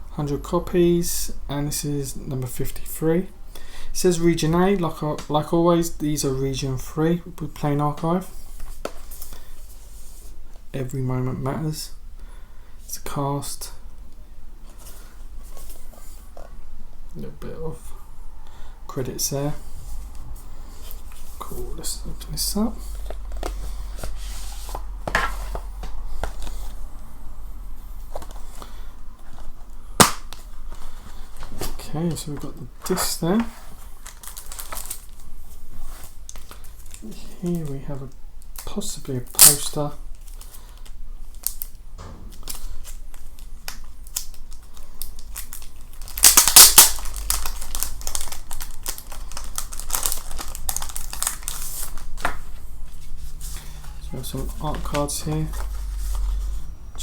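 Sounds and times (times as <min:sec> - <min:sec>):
cardboard and plastic rustling: 0:19.5 - 0:27.0, 0:28.1 - 0:37.8, 0:39.5 - 0:56.7
paper rustling and crinkling: 0:33.4 - 0:37.4, 0:44.1 - 0:56.7
sharp loud click: 0:42.0 - 0:44.2.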